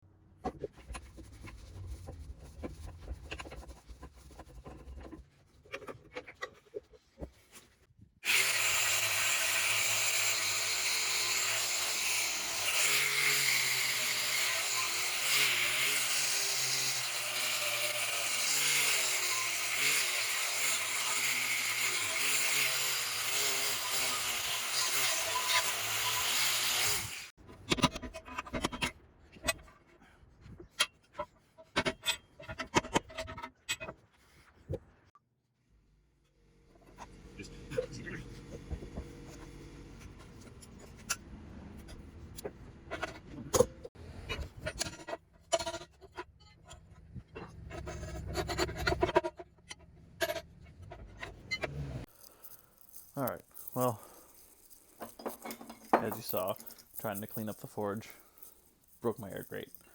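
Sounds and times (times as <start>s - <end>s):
power tool running: 8.2s - 27.3s, 52.1s - 59.9s.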